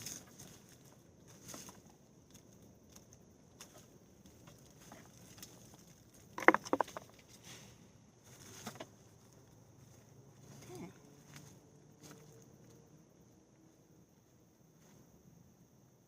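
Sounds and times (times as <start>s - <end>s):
soil rustling and scraping: 0.0s - 12.4s.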